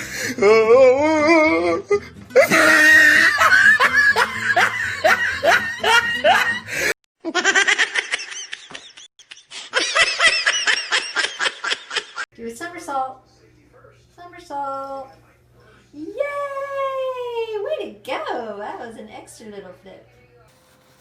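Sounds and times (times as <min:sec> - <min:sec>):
people laughing hard: 0:02.4 - 0:12.2.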